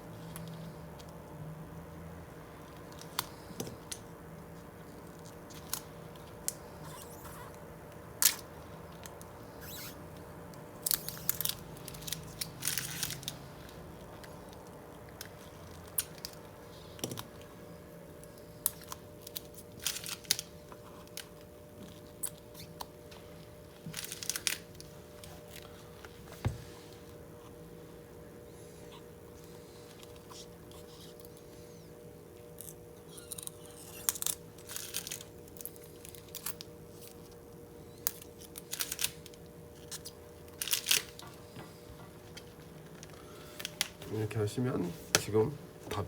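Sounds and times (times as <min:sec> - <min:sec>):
film peeling with crackling: 0:05.1 - 0:07.6, 0:08.2 - 0:10.0, 0:10.8 - 0:16.5, 0:18.6 - 0:26.2, 0:32.6 - 0:41.3.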